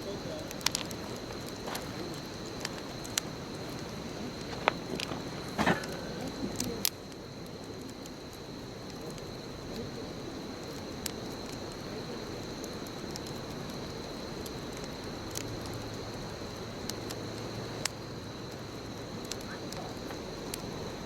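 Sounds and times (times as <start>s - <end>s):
wood crackling pops: 0.0s - 9.8s
bonfire hissing: 0.0s - 21.0s.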